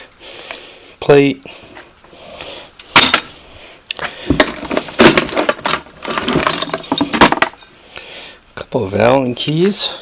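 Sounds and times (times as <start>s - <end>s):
metal tools clinking and rattling: 3.0s - 3.4s, 4.3s - 7.7s.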